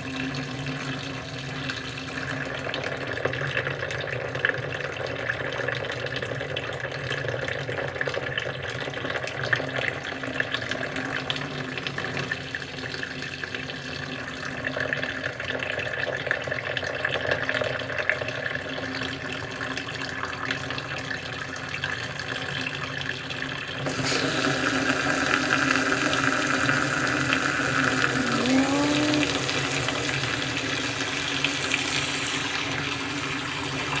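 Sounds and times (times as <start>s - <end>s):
water pouring and rushing: 23.8s - 34.0s.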